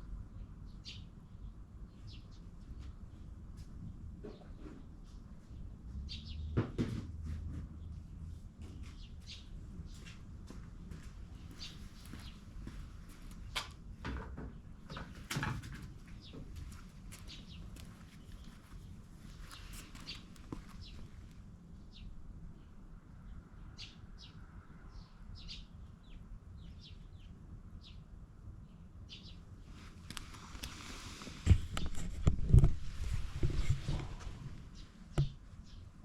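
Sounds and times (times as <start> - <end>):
small birds chirping: 0.3 - 6.6, 7.7 - 13.7, 14.4 - 30.8, 34.6 - 36.0.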